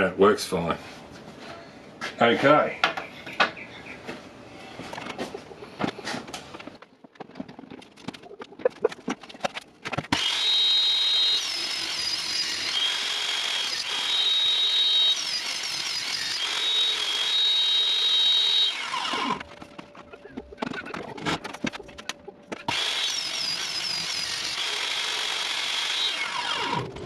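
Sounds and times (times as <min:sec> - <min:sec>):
electric saw whining: 0:10.1 - 0:19.6, 0:22.7 - 0:27.0.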